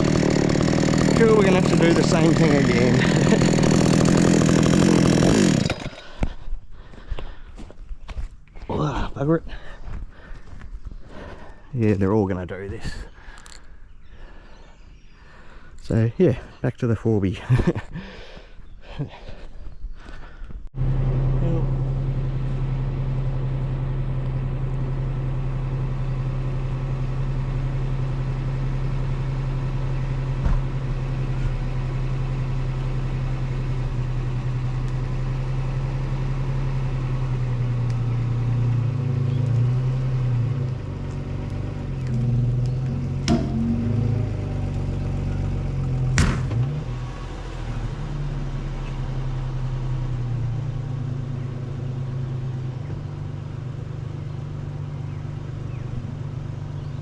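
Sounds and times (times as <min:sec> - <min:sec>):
vehicle engine revving: 0:00.0 - 0:05.8, 0:20.8 - 0:57.0.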